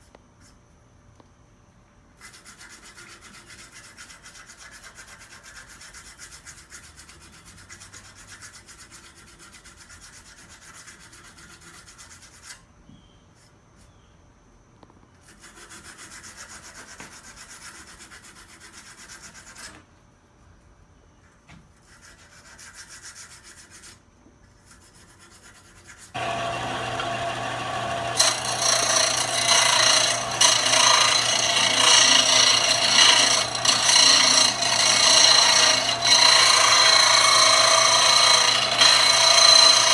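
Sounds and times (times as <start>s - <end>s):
rasping strokes on metal: 24.6s - 39.9s
power tool humming: 26.2s - 39.9s.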